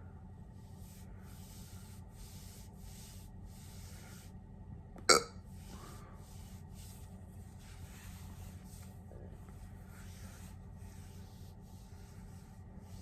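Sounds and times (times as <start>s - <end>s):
soft hissing: 0.7s - 4.4s, 5.5s - 13.0s
sharp loud hiccup: 5.1s - 5.4s.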